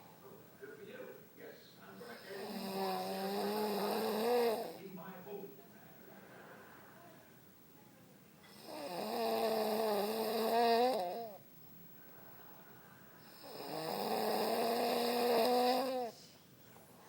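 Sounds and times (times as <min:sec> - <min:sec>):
quiet breathing: 0:01.8 - 0:05.0, 0:05.8 - 0:07.4, 0:10.0 - 0:17.0
man snoring: 0:02.1 - 0:04.8, 0:08.5 - 0:11.4, 0:13.2 - 0:16.2.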